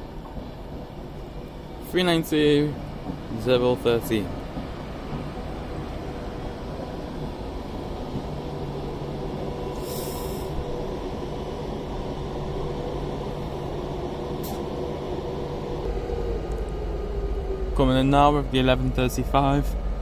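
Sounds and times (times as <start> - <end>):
electric train rumbling: 0.0 - 20.0
short hiss: 9.8 - 10.6.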